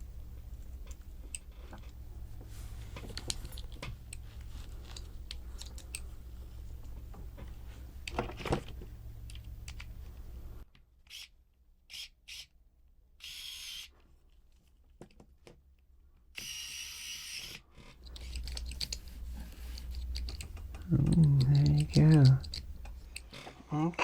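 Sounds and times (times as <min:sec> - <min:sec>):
plastic parts clicking: 0:17.8 - 0:23.4.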